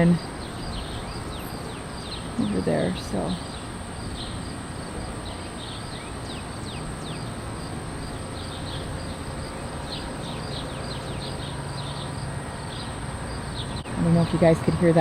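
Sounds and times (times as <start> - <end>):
birds chirping: 0.0 - 15.0
insects droning: 0.0 - 15.0
falling whistled bird calls: 0.2 - 9.2.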